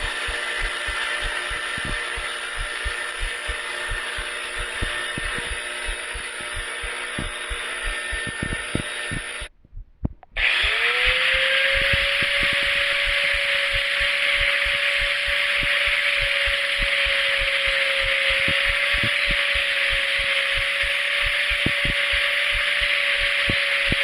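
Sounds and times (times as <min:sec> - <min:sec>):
metal grinder grinding: 0:00.0 - 0:09.5, 0:10.4 - 0:24.0
motor whine: 0:00.0 - 0:09.5, 0:10.3 - 0:24.0.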